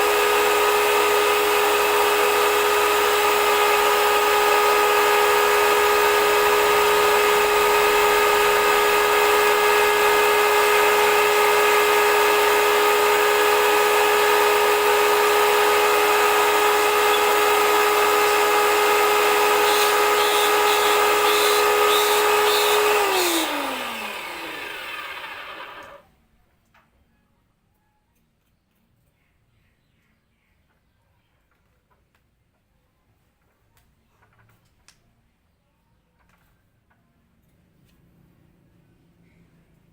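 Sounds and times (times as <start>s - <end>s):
jet washer motor whining: 0.0s - 26.0s.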